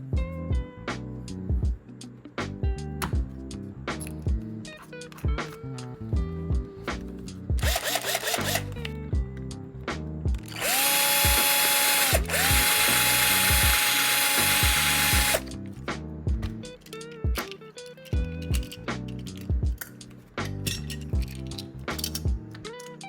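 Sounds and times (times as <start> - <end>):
background music with steady beat: 0.0 - 23.0
handheld power drill: 7.6 - 8.9, 10.4 - 15.4.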